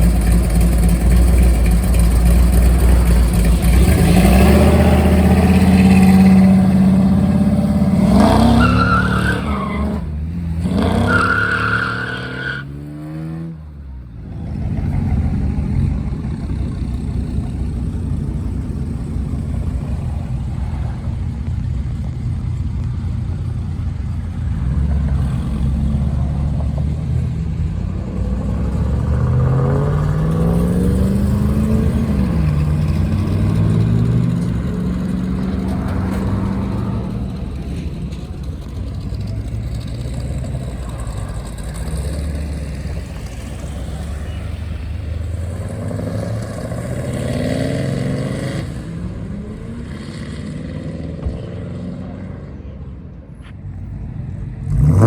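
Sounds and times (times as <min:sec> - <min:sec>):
engine revving: 0:00.0 - 0:21.6, 0:23.2 - 0:52.5, 0:54.6 - 0:55.0
car engine revving and accelerating: 0:00.0 - 0:22.2, 0:23.2 - 0:52.8, 0:54.5 - 0:55.0.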